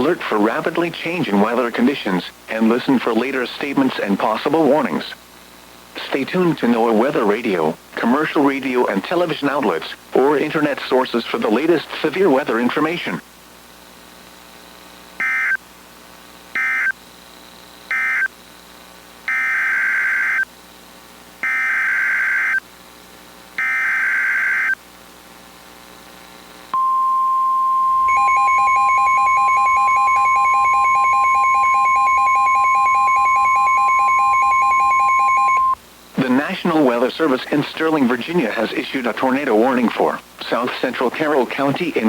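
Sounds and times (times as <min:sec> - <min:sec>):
single-pitch warning alarm tone: 0:15.2 - 0:15.6, 0:16.6 - 0:17.0, 0:17.9 - 0:18.3, 0:19.3 - 0:20.5, 0:21.4 - 0:22.6, 0:23.6 - 0:24.8, 0:26.7 - 0:35.8
fast-pulsing beep: 0:26.8 - 0:35.8.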